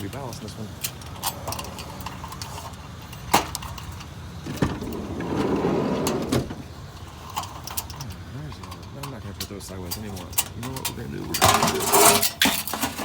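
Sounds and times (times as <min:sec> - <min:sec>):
rough scraping: 0:04.4 - 0:07.0.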